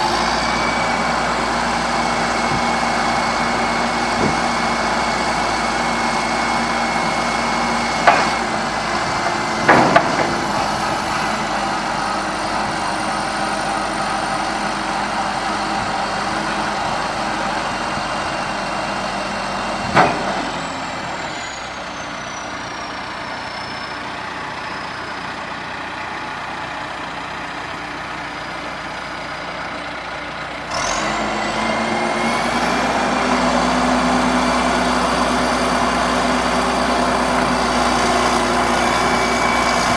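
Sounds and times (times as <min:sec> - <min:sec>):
diesel engine running: 0:00.0 - 0:39.9
sharp knocks: 0:09.2 - 0:10.6.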